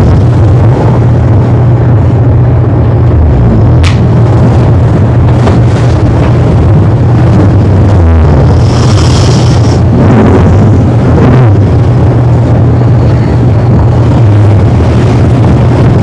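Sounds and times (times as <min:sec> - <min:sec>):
distorted man snoring: 0:08.0 - 0:11.5.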